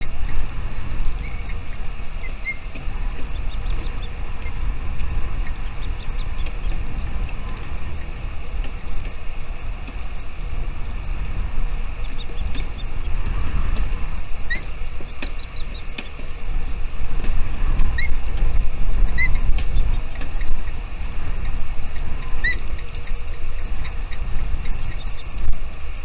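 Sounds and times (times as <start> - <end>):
steady low rumble: 0.0 - 26.0
bird chirps: 0.2 - 8.5, 11.7 - 13.4, 14.3 - 16.2, 19.1 - 25.5.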